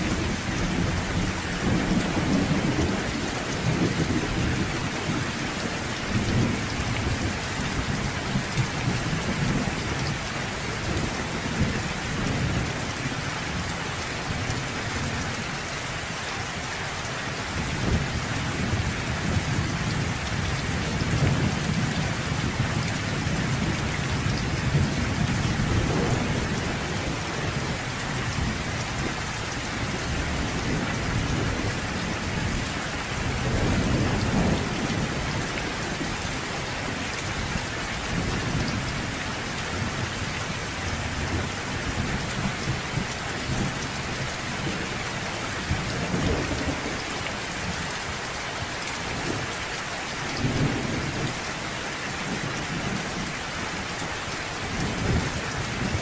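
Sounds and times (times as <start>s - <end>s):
heavy rain hissing: 0.0s - 56.0s
thunder rumbling: 18.6s - 29.1s, 29.8s - 36.2s.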